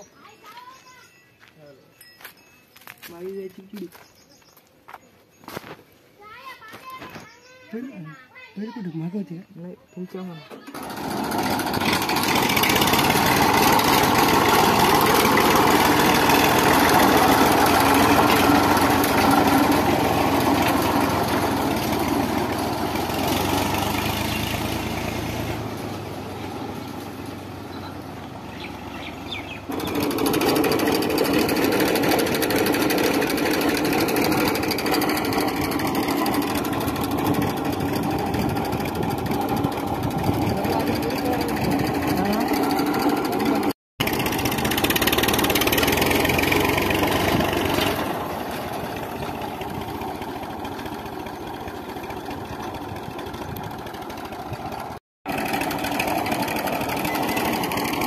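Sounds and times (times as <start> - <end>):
tractor diesel engine running: 10.3 - 58.0.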